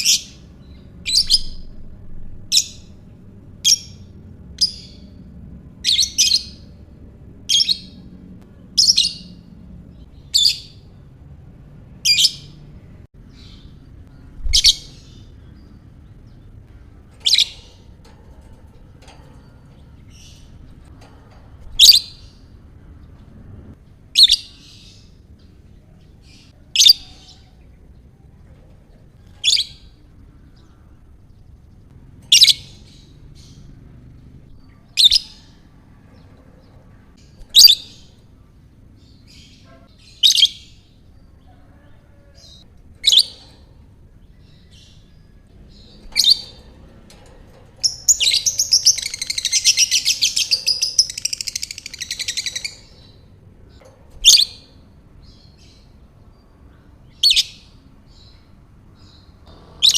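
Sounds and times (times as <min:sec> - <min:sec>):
lovebird chirping: 0:00.0 - 0:03.0, 0:13.2 - 0:21.0, 0:29.2 - 0:31.5, 0:37.2 - 0:38.3, 0:39.0 - 0:47.2, 0:47.8 - 0:59.9.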